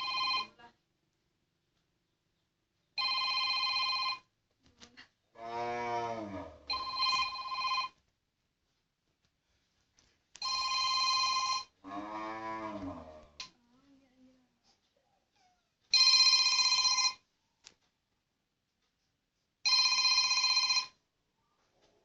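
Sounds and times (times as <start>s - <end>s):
telephone ringtone: 0.0s - 0.5s, 3.0s - 4.3s, 6.7s - 8.0s, 10.4s - 11.8s, 15.9s - 17.2s, 19.7s - 21.0s.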